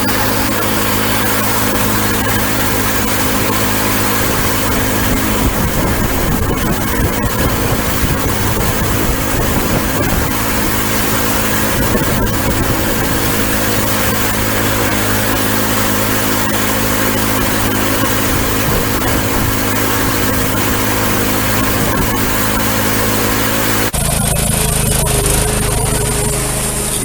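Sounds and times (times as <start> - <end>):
small engine droning: 0.0 - 27.0.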